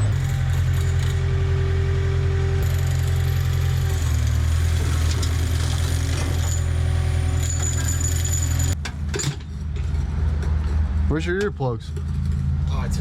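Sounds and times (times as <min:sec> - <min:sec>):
jackhammer breaking concrete: 0:02.6 - 0:08.8.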